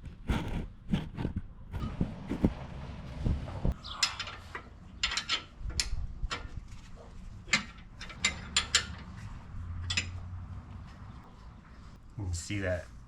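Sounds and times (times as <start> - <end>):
hand tools clicking and clacking: 7.5 - 9.2.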